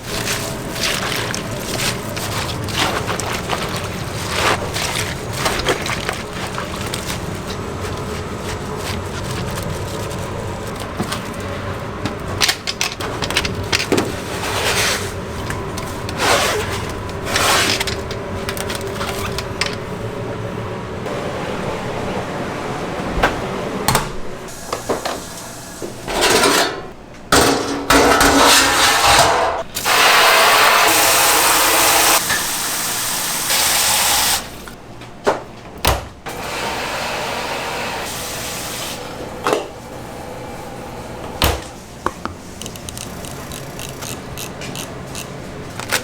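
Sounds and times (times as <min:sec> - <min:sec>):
utensils and cookware clattering: 0:00.0 - 0:20.0, 0:26.0 - 0:30.0
steady background hum: 0:00.0 - 0:29.9, 0:34.2 - 0:36.4, 0:38.0 - 0:46.0.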